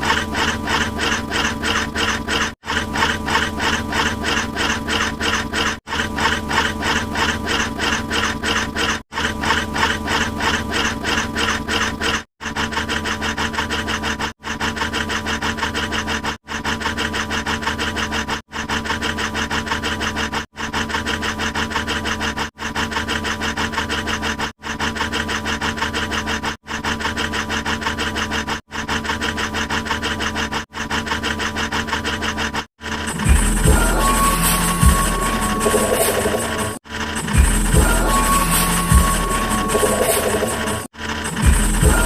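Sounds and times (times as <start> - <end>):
harsh rasping pulses: 0.0 - 42.0
steady buzz: 32.8 - 42.0.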